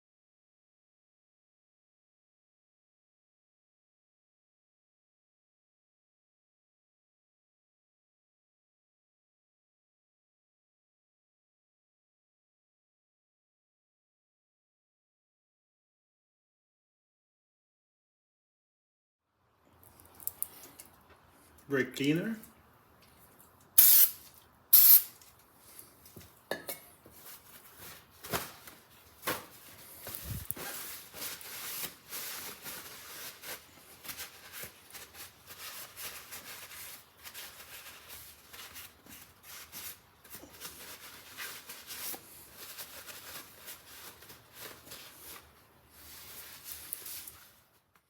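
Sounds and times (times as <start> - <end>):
aerosol spray bursts: 23.8 - 25.1
rustling: 27.1 - 47.8.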